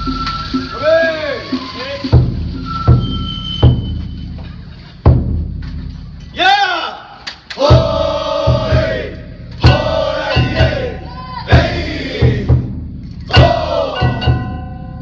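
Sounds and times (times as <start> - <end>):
sliding pitched melody: 0.0 - 3.8, 13.3 - 15.0
drum strokes: 0.0 - 6.3, 7.5 - 15.0.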